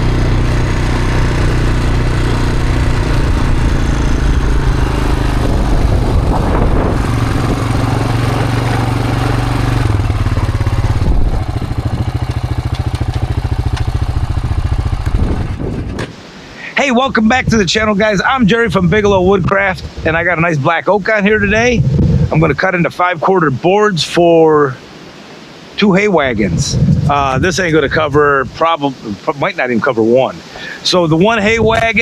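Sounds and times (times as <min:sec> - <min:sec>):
sawmill engine running: 0:00.0 - 0:16.1.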